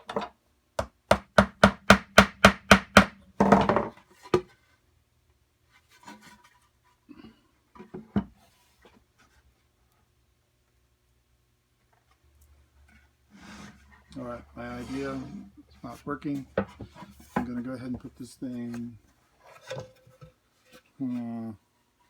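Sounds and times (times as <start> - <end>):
hammer striking nail into wood: 0.8 - 3.2
rough scrape: 13.3 - 17.6.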